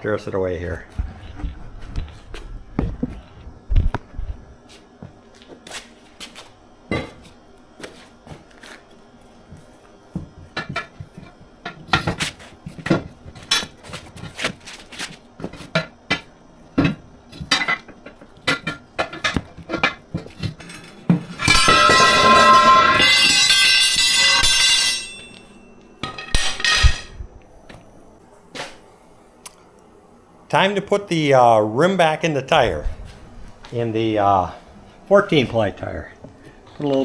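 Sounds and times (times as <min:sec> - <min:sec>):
tire irons clanking on wheel rim: 0:16.8 - 0:25.4.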